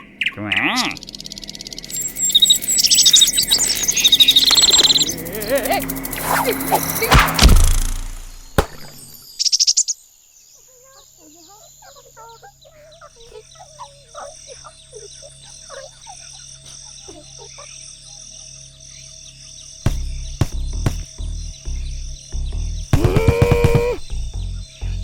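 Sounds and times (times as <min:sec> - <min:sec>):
bird chirps and warbles: 0:00.0 - 0:07.1, 0:08.5 - 0:23.0, 0:24.0 - 0:25.0
rattle of rapid clicks: 0:01.7 - 0:09.2.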